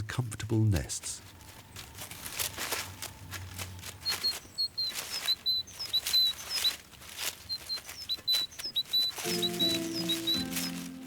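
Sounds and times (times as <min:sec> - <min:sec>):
dry leaves rustling: 0:00.9 - 0:11.0
small bird chirping: 0:01.2 - 0:11.0.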